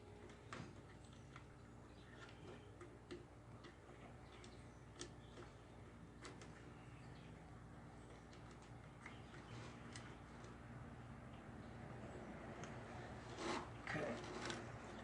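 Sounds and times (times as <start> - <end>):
low steady hum: 0.0 - 15.0
small clicks of hands working: 0.2 - 6.8, 8.0 - 10.6, 12.6 - 12.8.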